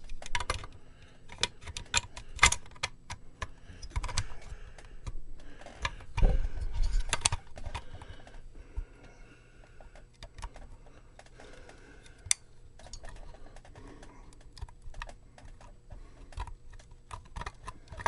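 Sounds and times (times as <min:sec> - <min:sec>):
small parts clicking into place: 0:00.0 - 0:08.4.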